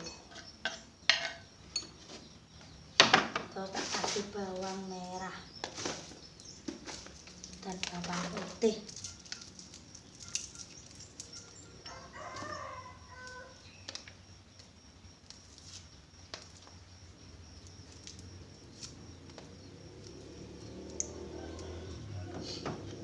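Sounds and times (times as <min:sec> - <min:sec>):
rooster crowing: 0:11.6 - 0:13.6, 0:21.0 - 0:23.0.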